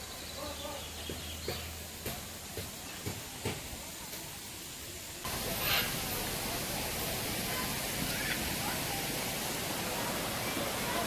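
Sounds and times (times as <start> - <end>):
waterfall rushing: 5.2 - 11.0.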